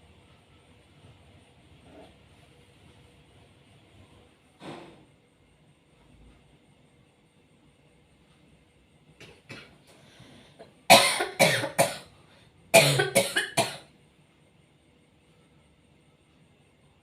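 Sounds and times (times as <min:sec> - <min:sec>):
person coughing: 0:10.6 - 0:12.1, 0:12.8 - 0:13.9.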